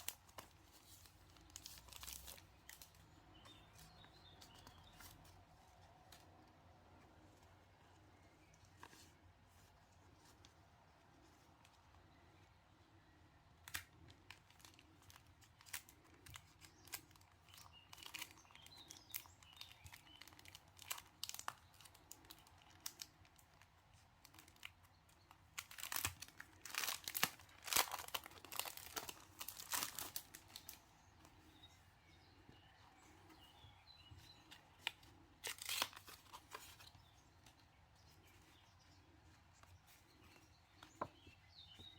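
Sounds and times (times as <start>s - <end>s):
packaging crinkling: 13.7s - 23.4s, 25.5s - 30.8s, 34.3s - 37.0s.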